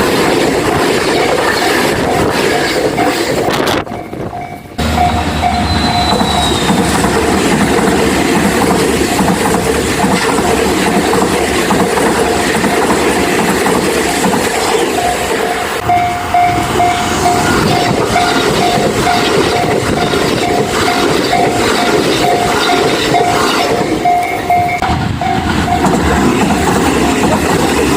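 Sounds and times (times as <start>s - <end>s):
train wheels clattering over rails: 0.0s - 27.9s
crossing warning bell ringing: 1.1s - 27.9s
high wheel squeal: 1.5s - 7.0s, 14.6s - 25.9s.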